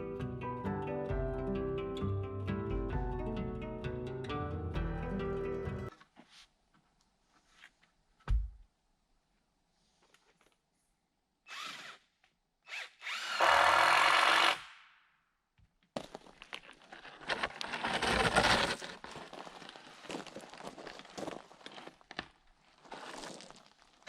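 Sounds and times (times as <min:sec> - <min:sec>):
power drill: 0:11.5 - 0:14.9.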